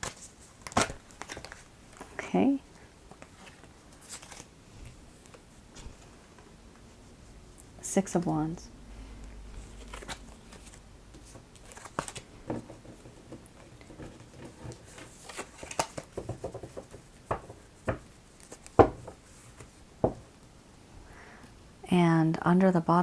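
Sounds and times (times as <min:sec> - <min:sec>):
cards being handled: 0:00.0 - 0:02.2, 0:03.1 - 0:06.0, 0:09.6 - 0:19.8
cards tapping down: 0:09.9 - 0:19.2.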